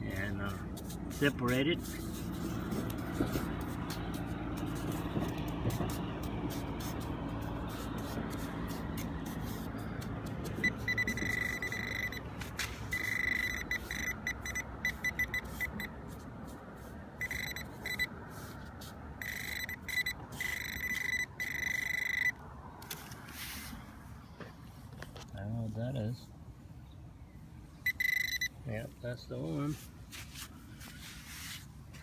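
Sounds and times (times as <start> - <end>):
metal detector high tone: 10.6 - 12.3, 12.9 - 15.9, 17.2 - 18.1, 19.2 - 22.4, 27.8 - 28.6.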